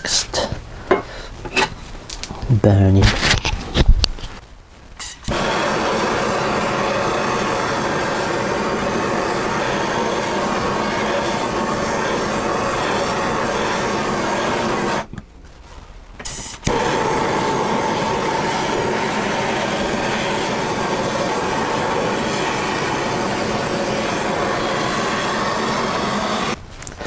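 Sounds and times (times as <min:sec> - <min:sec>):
blowtorch click: 0:02.1 - 0:04.3, 0:05.0 - 0:15.2, 0:16.2 - 0:27.0
blowtorch flame roaring hiss: 0:05.0 - 0:15.2, 0:16.2 - 0:27.0.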